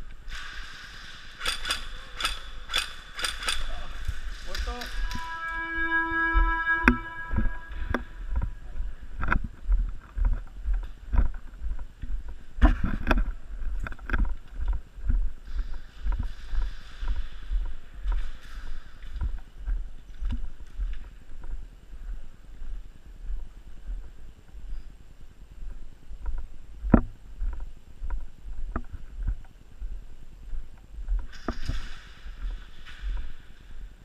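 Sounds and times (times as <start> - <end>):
airsoft guns firing: 1.0 - 4.0.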